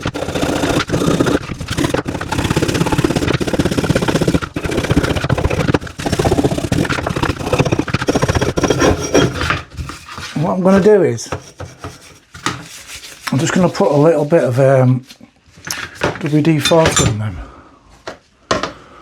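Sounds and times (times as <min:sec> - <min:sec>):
wire brush scraping rusty metal: 0:00.0 - 0:10.6, 0:11.5 - 0:14.6.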